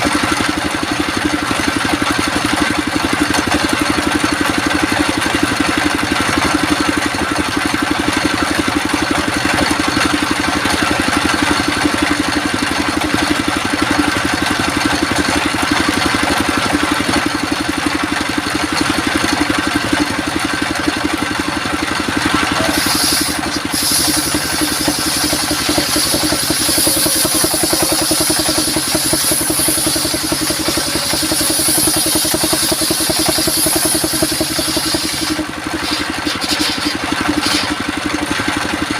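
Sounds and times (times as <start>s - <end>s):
sawmill engine running: 0.0s - 38.9s
saw whining through wood: 7.8s - 38.8s.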